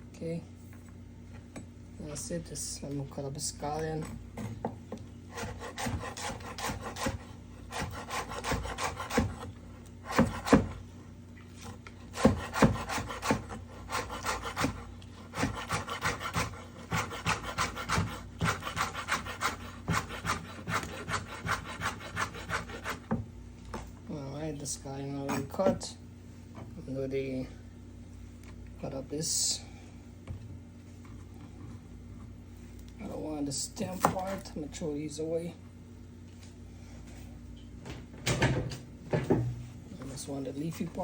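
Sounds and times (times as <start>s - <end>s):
knife chopping on cutting board: 5.4s - 9.5s, 10.1s - 10.8s, 12.2s - 23.2s.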